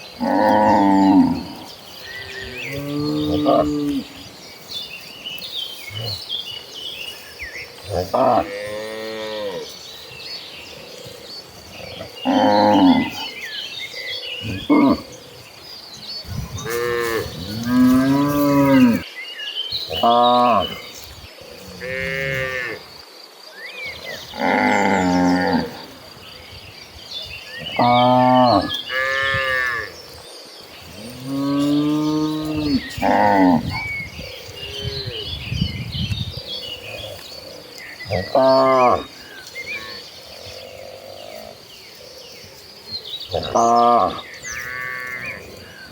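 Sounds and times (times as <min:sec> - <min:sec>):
cattle mooing: 0:16.6 - 0:19.0, 0:31.0 - 0:33.8.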